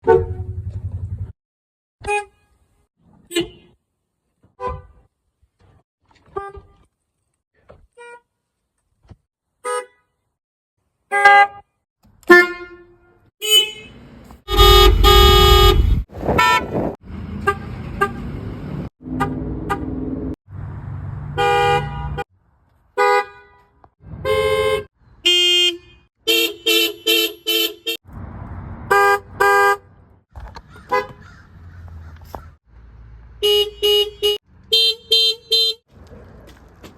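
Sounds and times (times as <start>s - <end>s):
car horns beeping: 0.0s - 0.6s, 2.0s - 2.5s, 3.2s - 3.8s, 4.6s - 5.1s, 6.2s - 6.8s, 11.1s - 11.6s, 12.2s - 18.3s, 19.0s - 20.1s, 21.4s - 22.3s, 23.0s - 28.0s, 28.9s - 29.9s, 30.8s - 31.3s, 33.4s - 35.9s.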